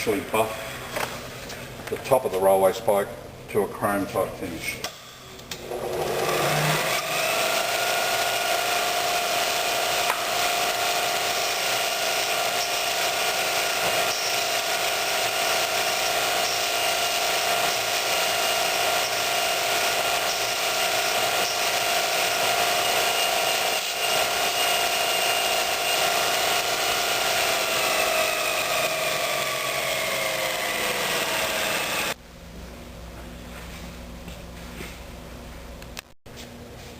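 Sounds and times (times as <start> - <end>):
belt grinder whining: 5.6 - 32.2.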